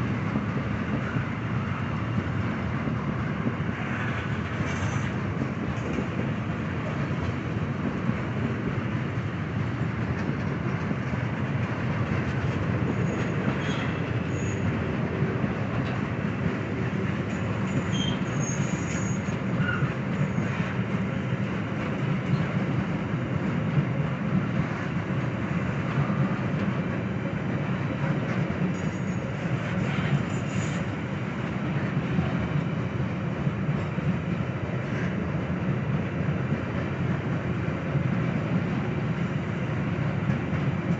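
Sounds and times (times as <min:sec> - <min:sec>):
freight train rumble: 0:00.0 - 0:40.9
high wheel squeals: 0:13.0 - 0:14.7, 0:17.6 - 0:20.6.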